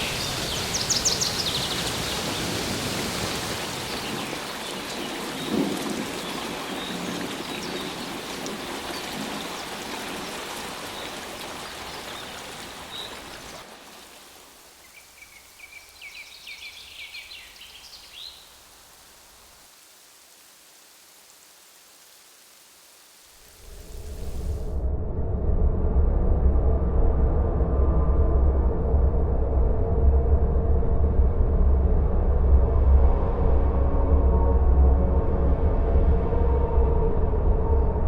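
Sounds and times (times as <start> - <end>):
rain falling: 0.0 - 24.8.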